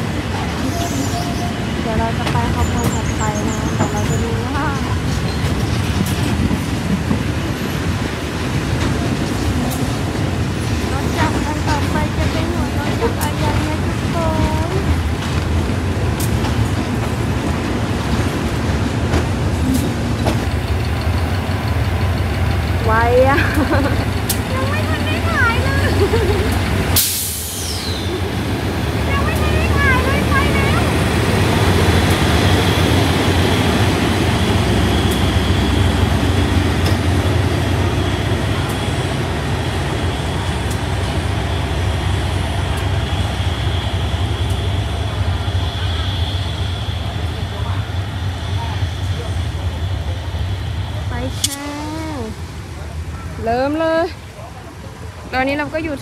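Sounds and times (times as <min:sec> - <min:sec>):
train wheels clacking: 0:00.0 - 0:52.4
train rumbling: 0:00.0 - 0:56.0.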